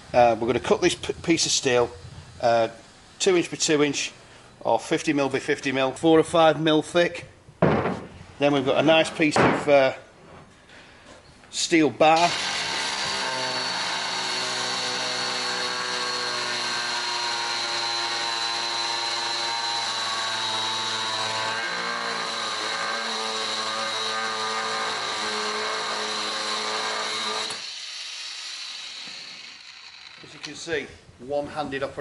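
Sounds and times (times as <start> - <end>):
angle grinder cutting steel: 12.2 - 30.6.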